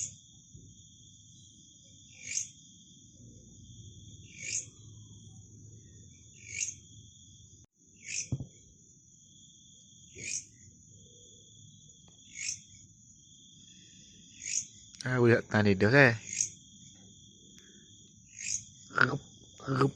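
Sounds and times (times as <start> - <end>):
grasshopper high-pitched buzz: 0.0 - 19.9
grasshopper rasping chirp: 0.0 - 19.9
short low thump: 8.3 - 8.6.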